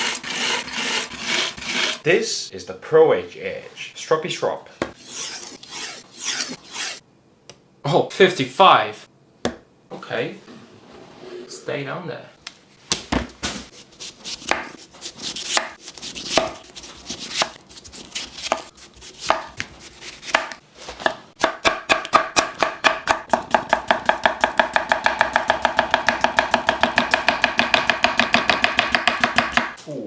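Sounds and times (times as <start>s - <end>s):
knife chopping on cutting board: 12.9s - 29.8s.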